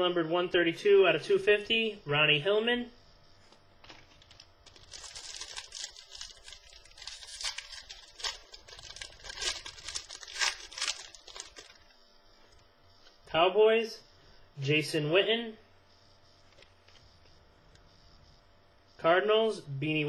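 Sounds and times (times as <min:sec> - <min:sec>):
card packs crinkling and tearing: 0:03.8 - 0:12.0.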